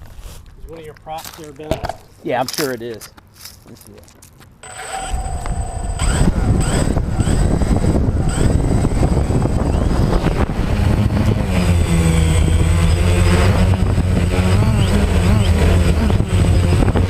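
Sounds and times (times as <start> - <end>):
drone propellers whining: 4.6 - 17.0
wind rumble: 5.0 - 17.0.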